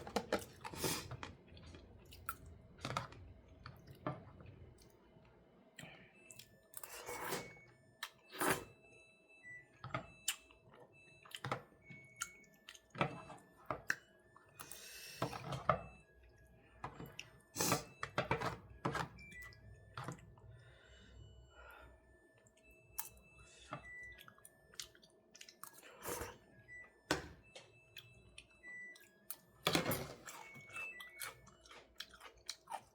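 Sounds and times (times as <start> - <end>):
person chewing: 24.1 - 26.4, 30.2 - 32.9.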